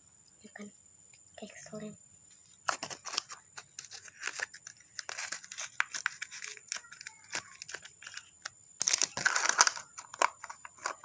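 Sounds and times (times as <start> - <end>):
sticky putty crackling: 2.6 - 11.0.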